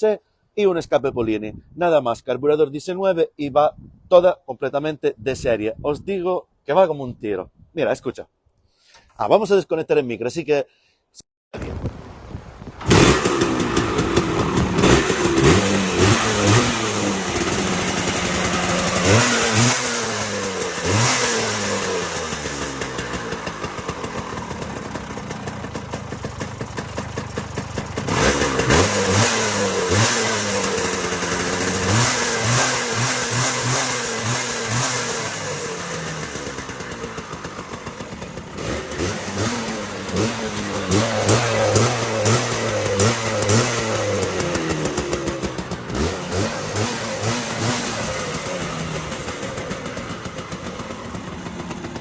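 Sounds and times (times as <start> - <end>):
scooter engine revving: 12.8 - 52.0.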